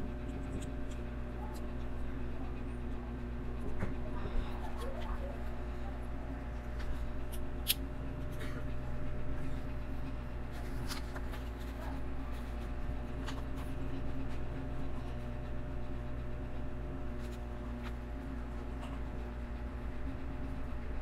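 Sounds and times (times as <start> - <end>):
low electrical hum: 0.0 - 21.0.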